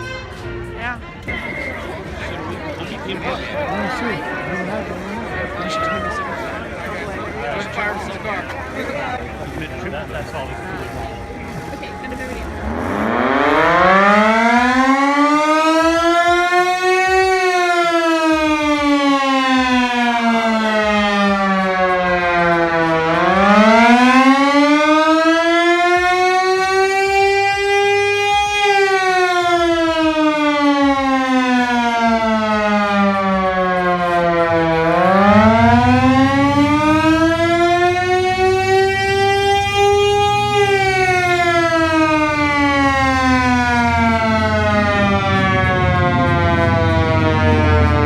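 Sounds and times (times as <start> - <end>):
air-raid siren wailing: 1.1 - 8.4, 9.8 - 48.0.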